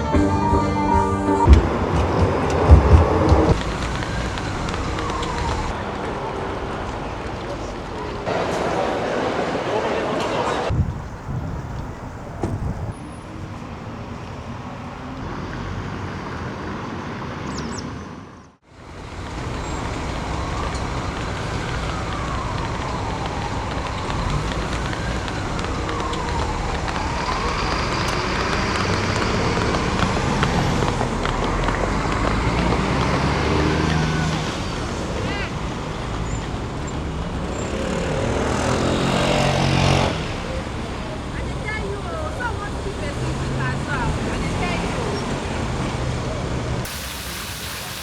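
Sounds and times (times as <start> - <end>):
distant siren wailing: 0.0 - 10.9, 18.8 - 45.8
street traffic passing: 0.0 - 48.0.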